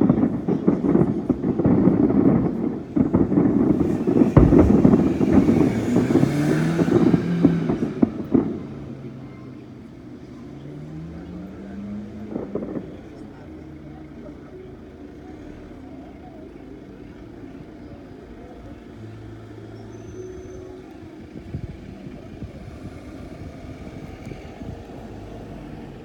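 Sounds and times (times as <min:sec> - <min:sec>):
heavy low boom: 0:00.0 - 0:09.2
fireworks bangs and crackles: 0:00.0 - 0:26.0.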